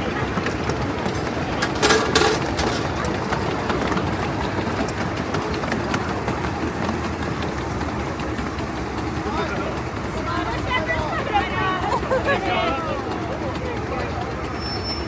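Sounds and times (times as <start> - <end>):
miniature steam train rumbling: 0.0 - 15.0.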